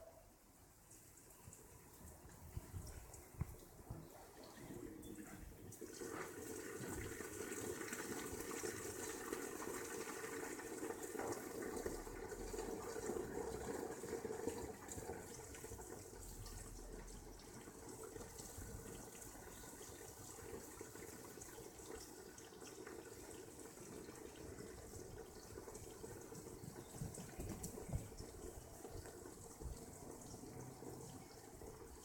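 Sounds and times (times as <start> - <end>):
rain hissing on water: 0.4 - 32.0.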